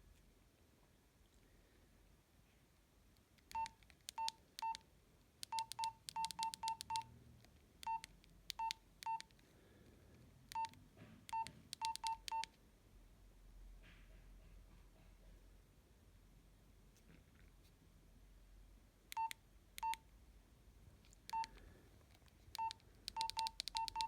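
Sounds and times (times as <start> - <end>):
keypad beeps with clicks: 3.5 - 4.8, 5.4 - 7.1, 7.8 - 9.3, 10.5 - 12.5, 19.1 - 20.0, 21.3 - 21.6, 22.5 - 24.0.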